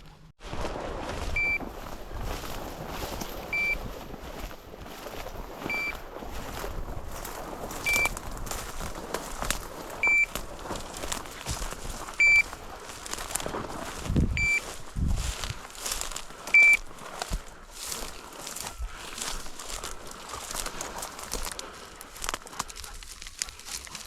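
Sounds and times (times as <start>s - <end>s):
footsteps crunching through field cover: 0.0s - 24.0s
beeper collar short high beeps: 1.4s - 1.6s, 3.6s - 3.8s, 5.7s - 5.9s, 7.9s - 8.1s, 10.0s - 10.3s, 12.2s - 12.5s, 14.4s - 14.7s.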